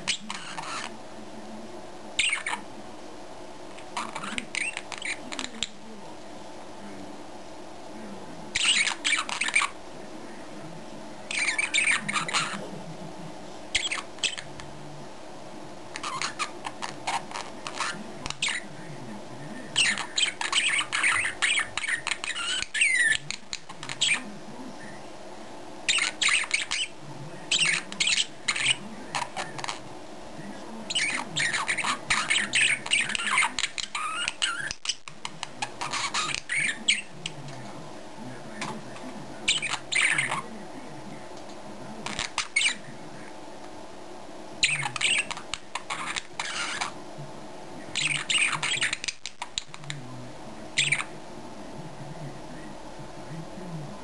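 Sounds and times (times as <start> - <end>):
small animal squawking and chirping: 0.0 - 0.9, 2.2 - 2.6, 3.8 - 5.7, 8.6 - 9.8, 11.3 - 12.6, 13.7 - 14.5, 16.0 - 18.6, 19.8 - 24.2, 25.9 - 29.8, 30.9 - 37.1, 39.5 - 40.4, 44.6 - 47.0, 48.0 - 49.7, 50.8 - 51.1.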